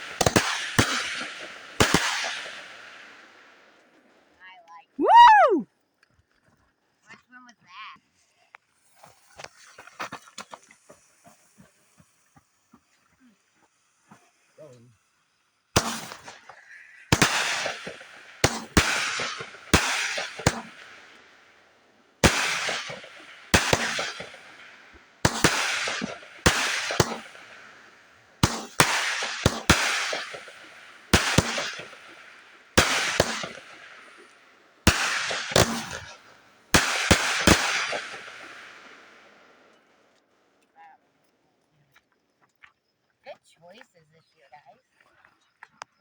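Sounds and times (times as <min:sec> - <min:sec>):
fireworks bangs: 0:00.0 - 0:03.4, 0:15.8 - 0:21.3, 0:22.2 - 0:39.7
crackling hiss: 0:00.0 - 0:04.4, 0:08.4 - 0:40.2.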